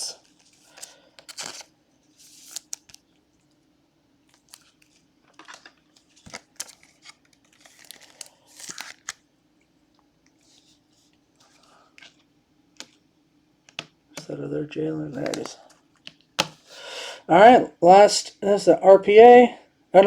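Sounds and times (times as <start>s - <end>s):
plastic packaging crinkling: 0.2s - 3.2s, 4.3s - 9.3s, 15.1s - 16.1s.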